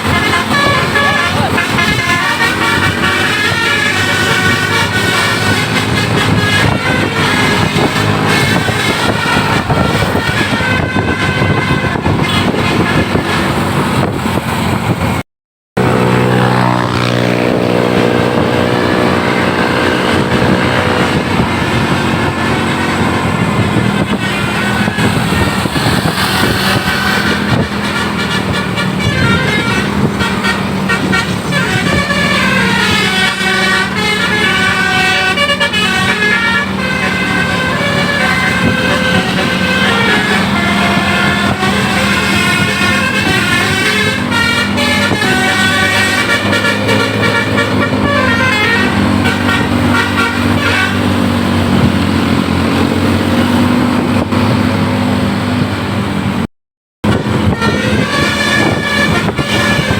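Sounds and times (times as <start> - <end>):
bus musical horns playing tunes: 0.0 - 15.2, 15.8 - 59.9
road and vehicle noise: 0.0 - 59.9.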